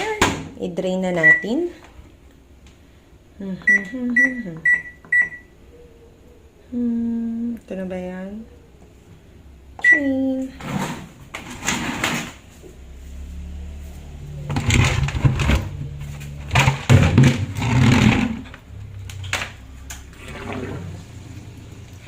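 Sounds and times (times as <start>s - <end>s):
drain pump humming: 12.1s - 22.0s
water gushing out: 20.1s - 22.0s.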